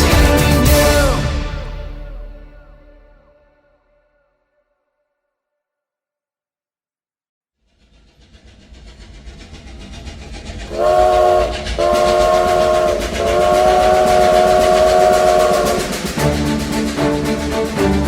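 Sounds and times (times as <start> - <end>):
train rumbling: 0.0 - 2.6, 7.6 - 18.0
train whistle blasts: 10.7 - 16.7.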